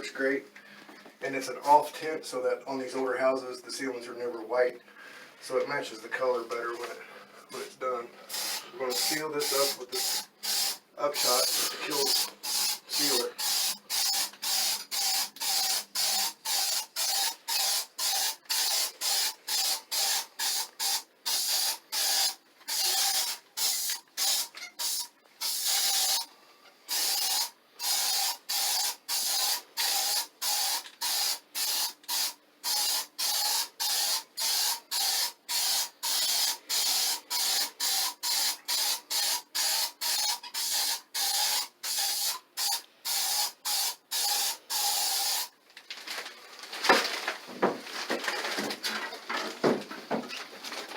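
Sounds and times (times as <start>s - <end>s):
aerosol spray bursts: 8.3s - 26.3s.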